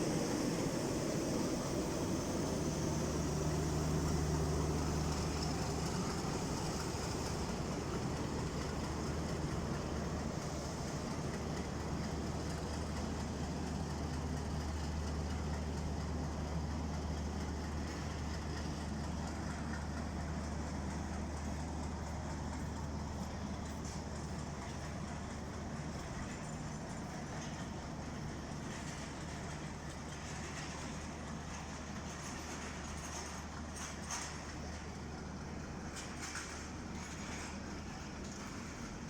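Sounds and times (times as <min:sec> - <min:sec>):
diesel locomotive engine drone: 0:00.0 - 0:39.0.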